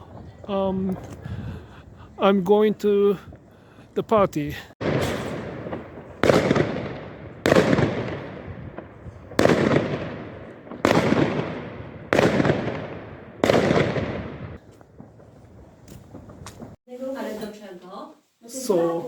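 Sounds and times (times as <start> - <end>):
fireworks bangs echoing: 4.8 - 16.8.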